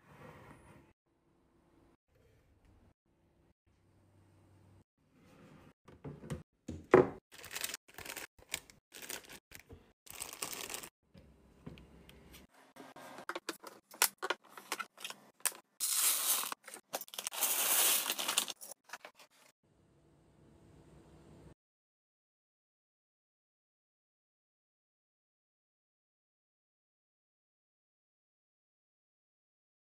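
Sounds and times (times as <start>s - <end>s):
packaging crinkling: 7.4s - 10.9s, 13.9s - 19.5s.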